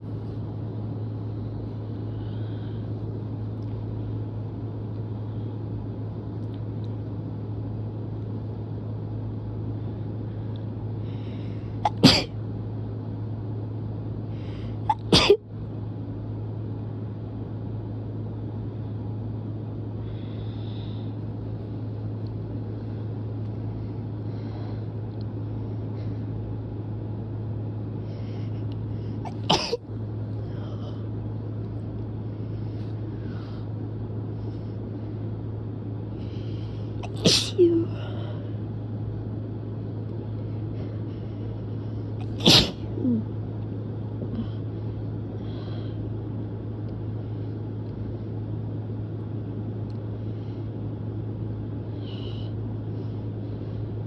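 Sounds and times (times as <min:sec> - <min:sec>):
steady low hum: 0:00.0 - 0:54.0
person sneezing: 0:11.8 - 0:12.3, 0:14.9 - 0:15.4, 0:29.3 - 0:29.8, 0:37.0 - 0:37.9, 0:42.2 - 0:43.2.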